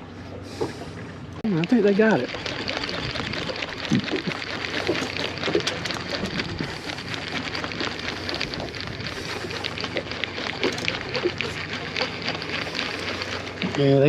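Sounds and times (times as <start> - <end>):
water splashing against boat: 0.0 - 14.0
wind buffeting microphone: 2.7 - 5.0.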